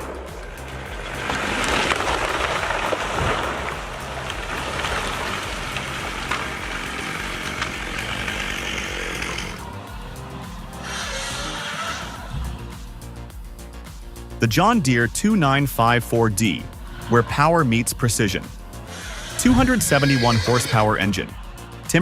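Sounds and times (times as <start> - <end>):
sharp wood cracks: 0.0 - 9.7
chainsaw cutting wood: 0.0 - 9.8, 10.8 - 12.4, 18.8 - 20.8
background music: 0.0 - 22.0.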